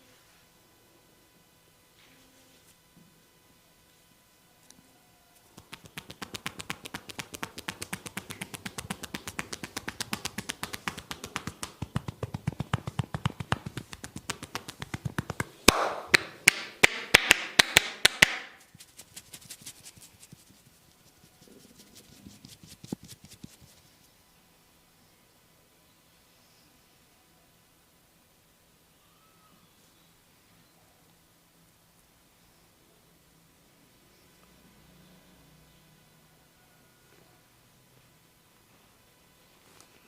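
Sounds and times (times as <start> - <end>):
sharp slaps on head: 5.6 - 18.6
hands tapping on head: 5.6 - 20.6, 21.7 - 23.8.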